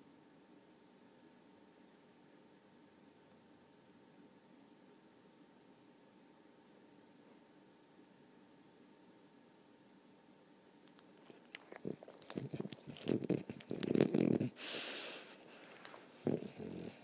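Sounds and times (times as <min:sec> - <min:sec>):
dog snoring: 0:11.2 - 0:17.0.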